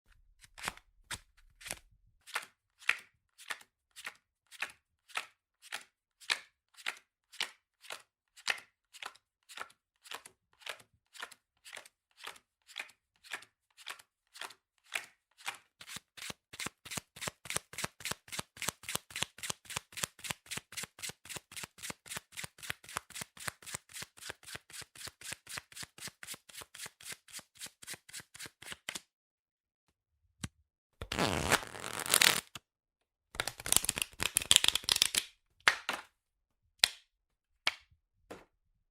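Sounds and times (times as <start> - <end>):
playing cards snapping: 31.0 - 32.6, 33.4 - 36.0.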